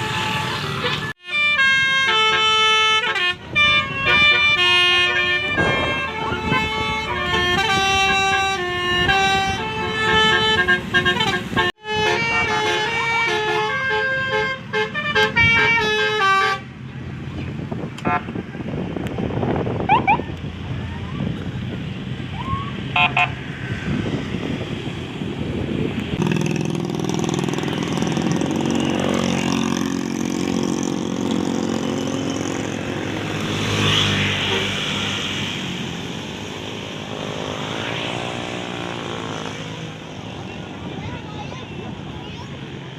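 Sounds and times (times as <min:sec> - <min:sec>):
multi-tone bus horn melody: 0:00.0 - 0:16.8, 0:18.0 - 0:18.4, 0:22.9 - 0:23.4, 0:32.8 - 0:35.2
road traffic: 0:00.0 - 0:42.9
heavy vehicle engine passing: 0:01.8 - 0:42.9.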